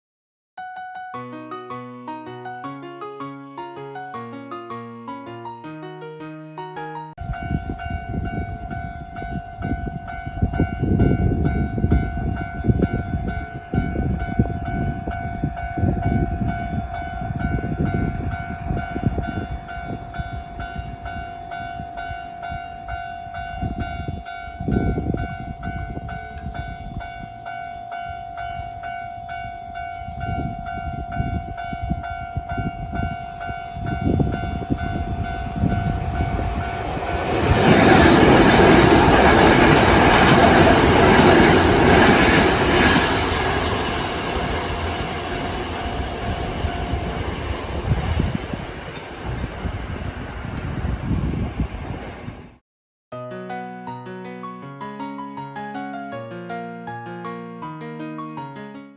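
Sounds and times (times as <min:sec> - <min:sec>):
level crossing bell ringing: 0:07.2 - 0:46.2
rush of train noise: 0:07.2 - 0:52.6.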